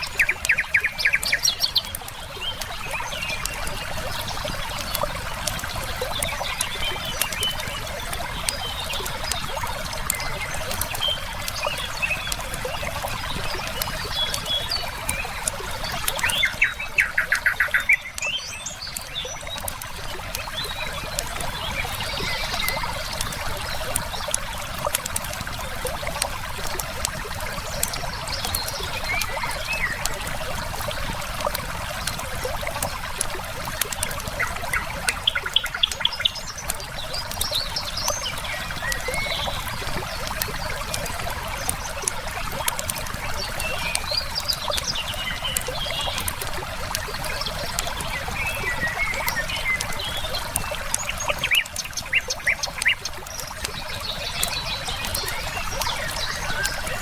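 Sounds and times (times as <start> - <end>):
birds chirping: 0.0 - 57.0
river flowing: 0.0 - 57.0
wood fire crackling: 0.0 - 57.0.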